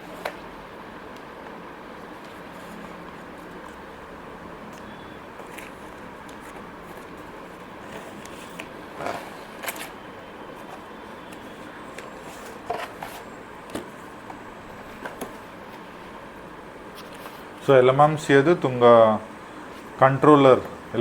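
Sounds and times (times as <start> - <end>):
packaging rustling and clicking: 4.7 - 10.0.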